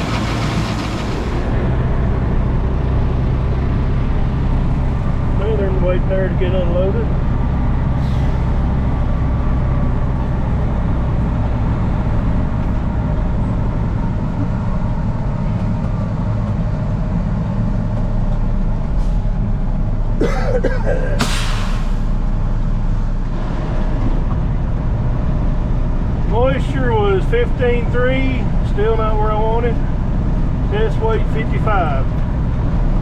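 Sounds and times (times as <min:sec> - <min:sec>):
diesel truck engine idling: 0:00.0 - 0:33.0
air hissing: 0:21.2 - 0:22.2.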